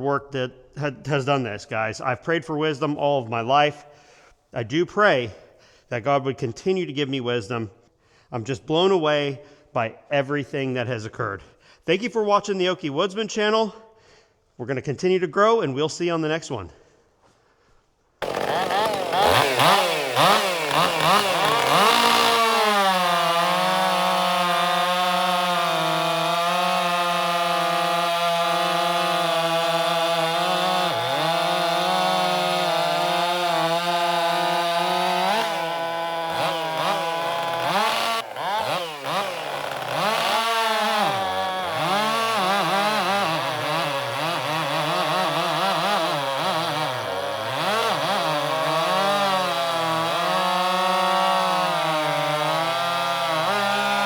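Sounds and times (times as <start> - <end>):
chainsaw cutting wood: 18.2 - 54.0.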